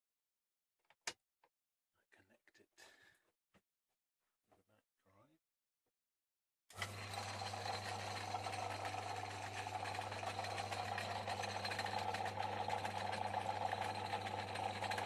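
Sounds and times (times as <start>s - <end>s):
lathe motor humming: 6.7s - 15.0s
spindle and gears rattling: 6.8s - 15.0s.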